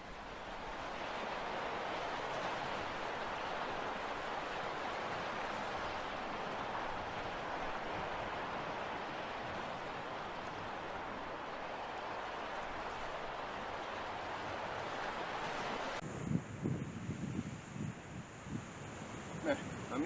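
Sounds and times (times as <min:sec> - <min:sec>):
sea surf washing onto beach: 0:00.0 - 0:16.0.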